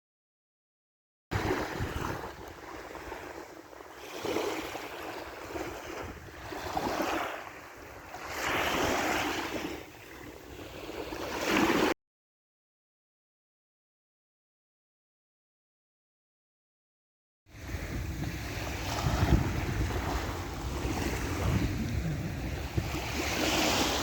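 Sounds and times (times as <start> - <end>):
sea waves washing ashore: 1.4 - 12.0, 17.5 - 24.0.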